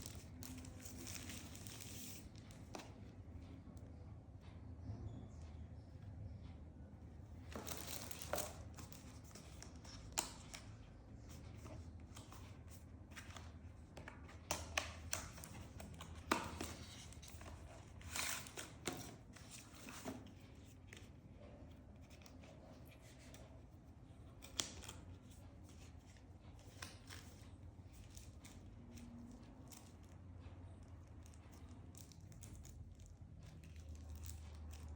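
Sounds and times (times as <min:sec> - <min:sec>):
faint low hum: 0:00.0 - 0:34.9
packaging crinkling and tearing: 0:07.5 - 0:10.6.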